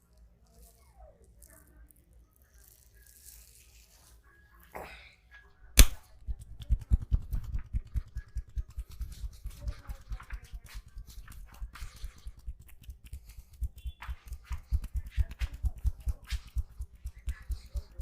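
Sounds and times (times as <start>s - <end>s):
sharp snap: 5.8s - 8.2s.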